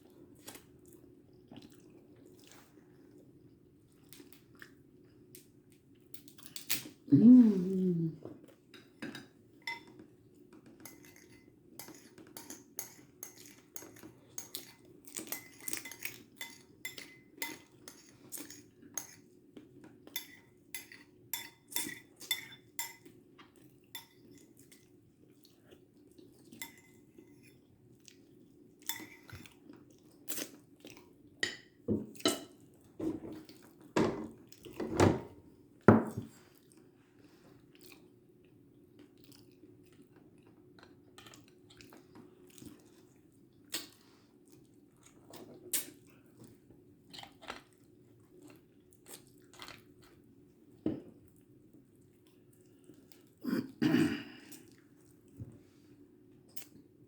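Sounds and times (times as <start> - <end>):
cutlery clinking on plates: 8.8 - 19.2, 31.4 - 33.4.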